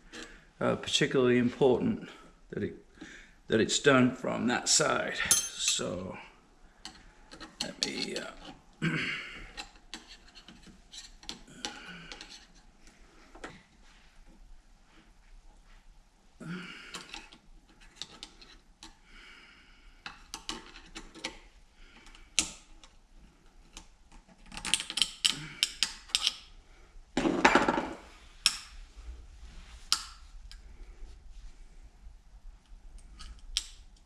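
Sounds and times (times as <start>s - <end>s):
metallic clicks and clinks: 24.4s - 26.4s.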